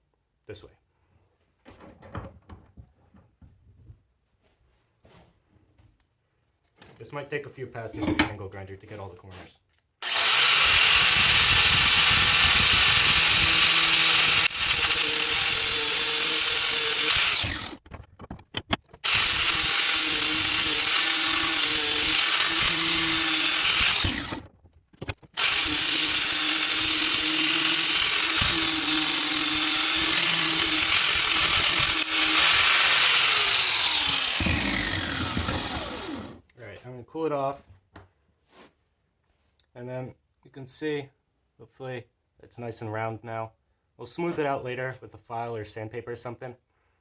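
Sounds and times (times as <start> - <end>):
angle grinder grinding steel: 10.0 - 17.8, 19.0 - 24.5, 25.4 - 36.4
grinder whine spinning down: 25.4 - 36.4.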